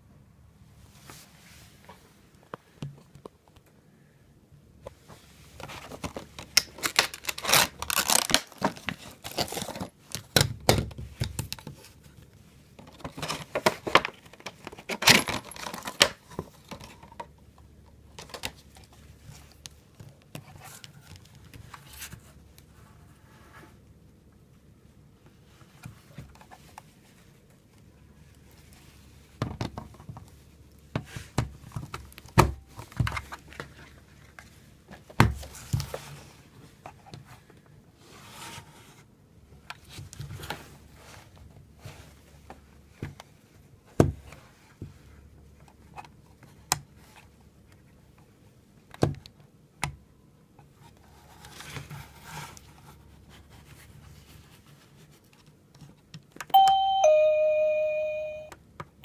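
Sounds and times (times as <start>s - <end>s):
soft rustling: 0.8s - 3.1s.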